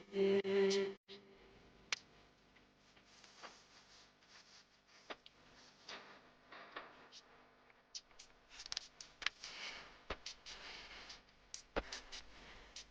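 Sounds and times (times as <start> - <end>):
soft rustling: 2.6 - 6.4.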